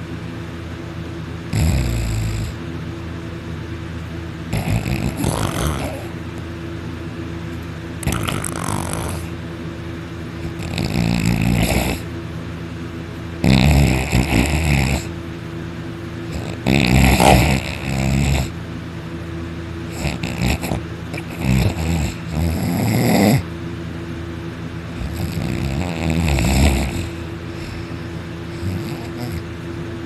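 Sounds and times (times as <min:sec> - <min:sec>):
person snoring: 0:01.5 - 0:02.6, 0:04.5 - 0:06.2, 0:08.0 - 0:09.4, 0:10.4 - 0:12.1, 0:13.4 - 0:15.1, 0:16.3 - 0:18.6, 0:19.9 - 0:23.5, 0:25.0 - 0:29.5.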